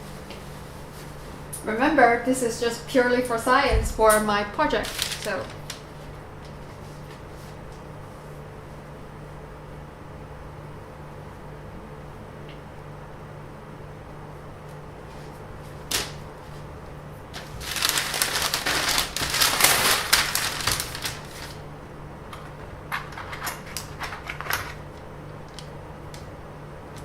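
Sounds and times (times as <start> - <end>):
crackling rustle: 0.0 - 1.7, 4.1 - 8.8, 14.6 - 27.0
low steady hum: 0.0 - 27.0.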